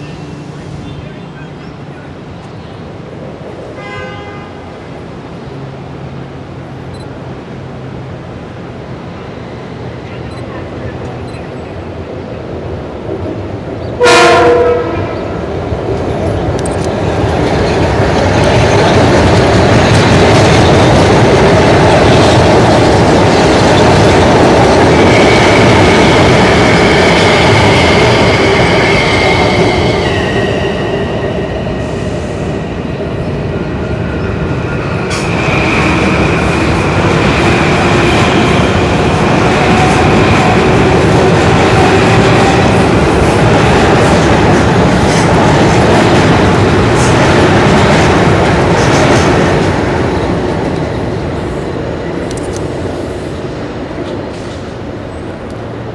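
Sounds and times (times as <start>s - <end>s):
train rumble and wheel clatter: 0.0s - 55.9s
train horn blast: 3.7s - 4.8s, 14.0s - 15.4s.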